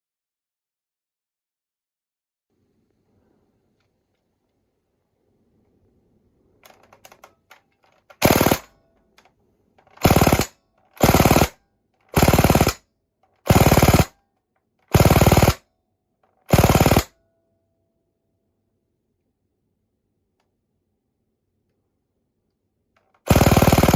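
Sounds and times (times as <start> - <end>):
airsoft gun firing bursts: 8.2 - 8.7, 10.0 - 12.8, 13.4 - 14.2, 14.9 - 15.6, 16.5 - 17.1, 23.2 - 23.9.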